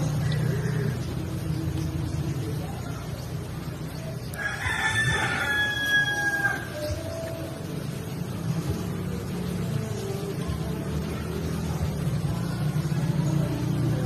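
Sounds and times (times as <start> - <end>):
rooster crowing: 4.3 - 7.0.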